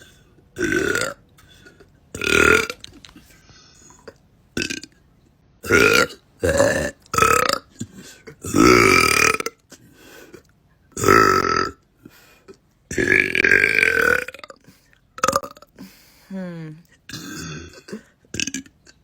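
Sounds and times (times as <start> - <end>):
woman burping: 0.0 - 1.2, 4.0 - 4.9, 5.6 - 9.6, 11.0 - 11.8, 12.9 - 14.6, 15.2 - 19.0.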